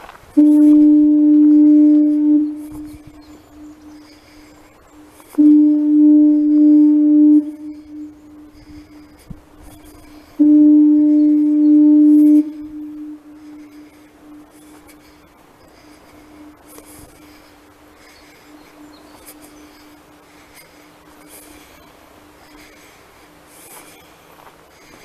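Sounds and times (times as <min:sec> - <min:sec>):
low foghorn blasts: 0:00.0 - 0:24.0.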